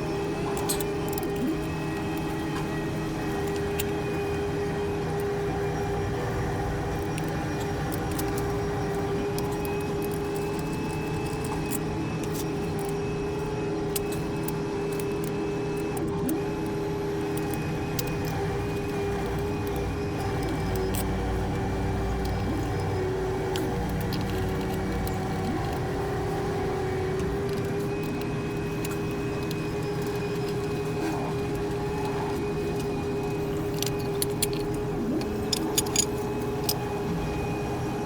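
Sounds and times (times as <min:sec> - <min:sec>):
steady mechanical hum: 0:00.0 - 0:38.0
hand tools clicking on metal bolts: 0:33.6 - 0:36.8.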